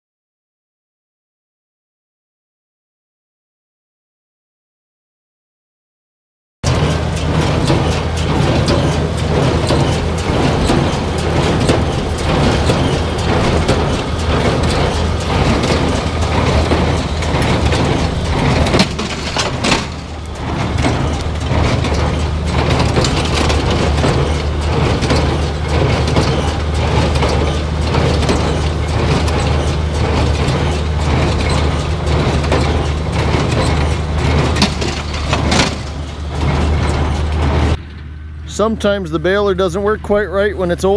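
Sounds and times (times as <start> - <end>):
baler clattering and clicking: 6.6 - 38.1
tractor engine low hum: 6.6 - 40.9.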